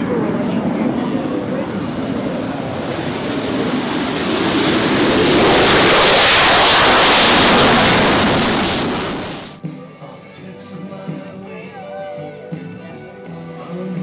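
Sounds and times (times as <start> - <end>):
jet passing overhead: 0.0 - 9.6.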